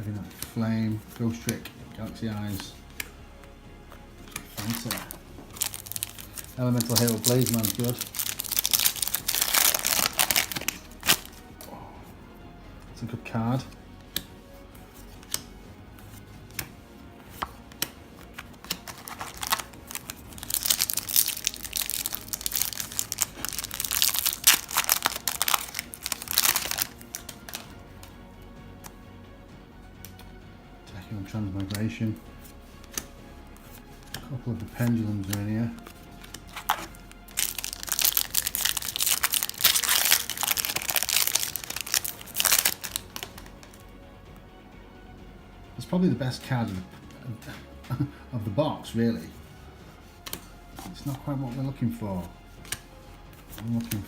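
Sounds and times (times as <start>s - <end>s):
plastic wrapper crinkling: 4.3s - 11.8s, 17.4s - 27.8s, 32.8s - 43.8s.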